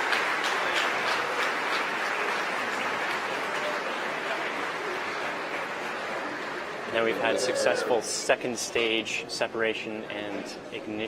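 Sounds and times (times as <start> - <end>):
crowd applauding: 0.0 - 8.0.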